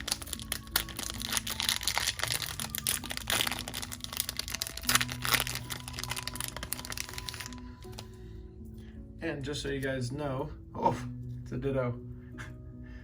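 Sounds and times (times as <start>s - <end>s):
wrapper crinkling: 0.0s - 8.1s.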